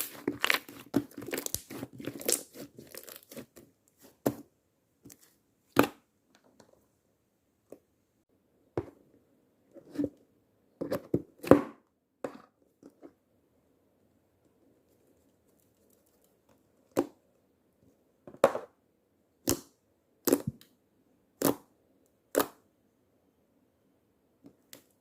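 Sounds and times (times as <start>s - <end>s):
slime popping and crunching: 0.0s - 3.6s.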